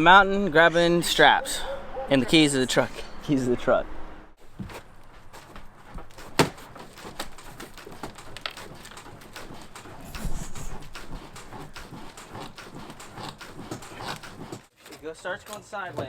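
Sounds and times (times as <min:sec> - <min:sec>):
footsteps on rough ground: 0:04.4 - 0:15.1.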